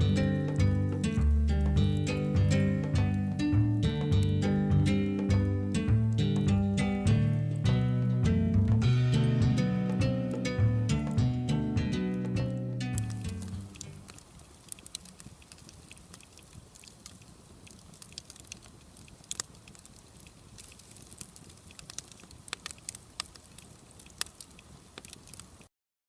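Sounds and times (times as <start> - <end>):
bonfire crackling and popping: 0.0 - 25.7
faint steady hiss: 0.0 - 25.7.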